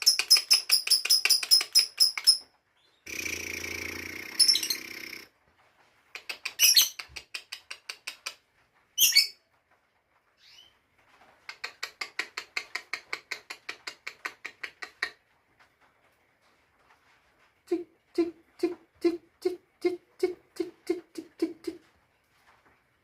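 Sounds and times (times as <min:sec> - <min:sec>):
bird sharp rapid chirps: 0:00.0 - 0:05.3.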